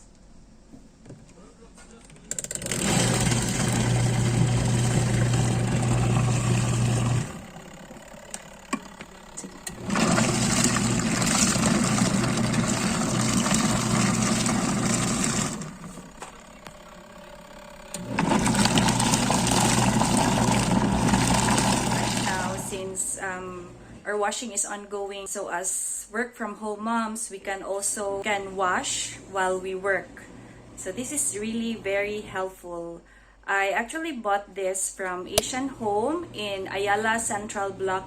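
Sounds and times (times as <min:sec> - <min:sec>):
washing machine motor humming: 0:02.1 - 0:24.0
water churning: 0:09.7 - 0:15.9, 0:18.0 - 0:22.7.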